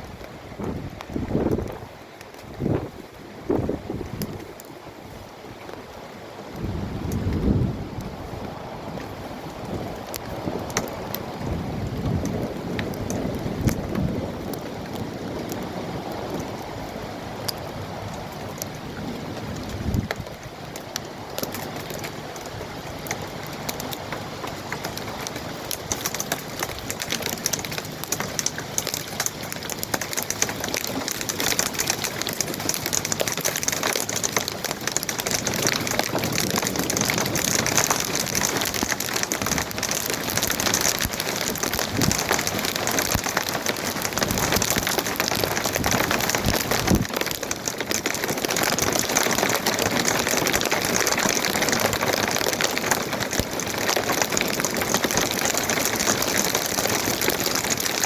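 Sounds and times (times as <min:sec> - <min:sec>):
heavy rain pattering: 0:00.0 - 0:58.0.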